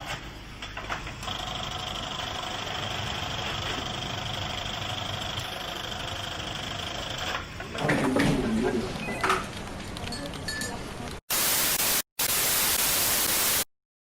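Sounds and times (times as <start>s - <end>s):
industrial sewing machine running: 1.2s - 8.0s.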